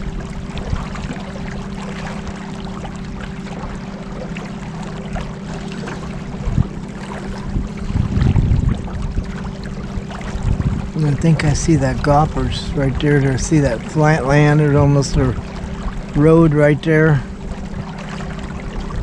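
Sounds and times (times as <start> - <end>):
boat motor humming: 0.0 - 19.0
rushing water: 0.0 - 19.0
wind noise: 6.4 - 13.0.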